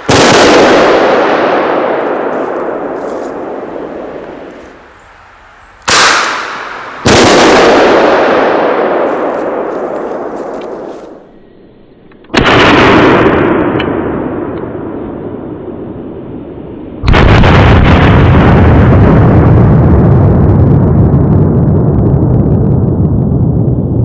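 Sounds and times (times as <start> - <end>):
pistol cracks and rumbling bangs: 0.0 - 4.8, 5.8 - 11.2, 12.3 - 15.8, 17.0 - 24.0
loud rumbling bangs: 0.0 - 11.2, 17.0 - 24.0.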